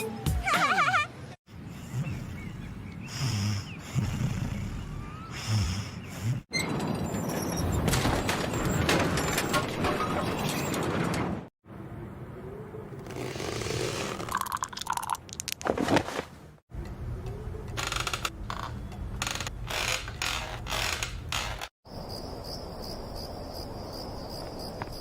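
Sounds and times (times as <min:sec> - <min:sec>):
cricket chirring: 0:21.9 - 0:25.0.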